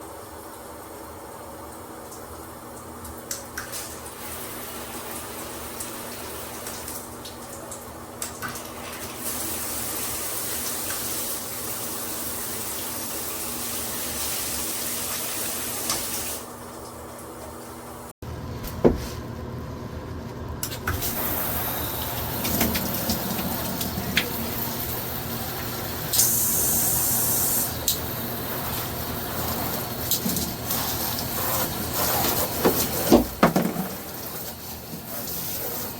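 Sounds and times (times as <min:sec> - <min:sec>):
shower water spraying: 0:08.5 - 0:16.5, 0:20.9 - 0:35.9.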